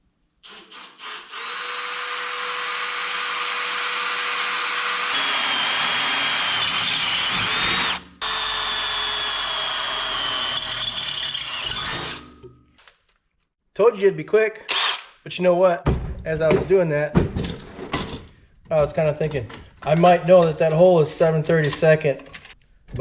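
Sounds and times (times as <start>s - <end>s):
power drill whining through metal: 0.4s - 12.4s, 14.7s - 15.1s.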